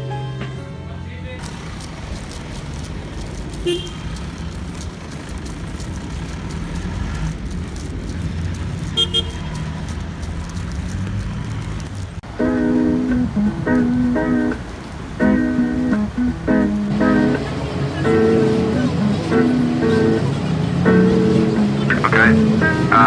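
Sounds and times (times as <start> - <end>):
road traffic rumbling: 1.1 - 23.0
vehicle horn toots: 3.6 - 4.1, 9.0 - 9.6
ukulele music: 12.2 - 23.0.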